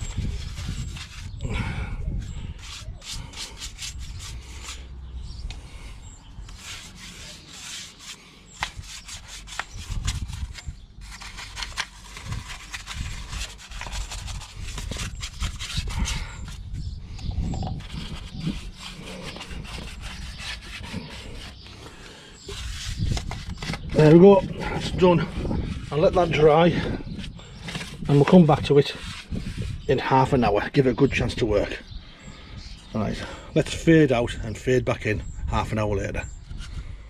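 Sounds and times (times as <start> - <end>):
paintbrush scrubbing on metal: 6.4 - 16.2, 17.5 - 21.6, 22.4 - 26.9.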